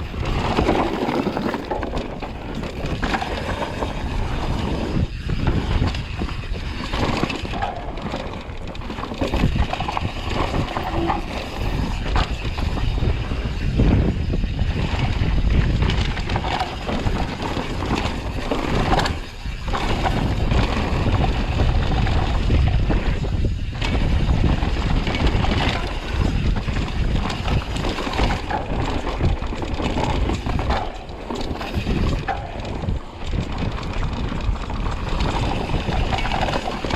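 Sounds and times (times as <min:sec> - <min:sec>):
tyres crunching over dirt: 0:00.0 - 0:04.9, 0:07.7 - 0:12.2
mountain bike clattering: 0:00.0 - 0:36.9
wind buffeting microphone: 0:00.0 - 0:36.9.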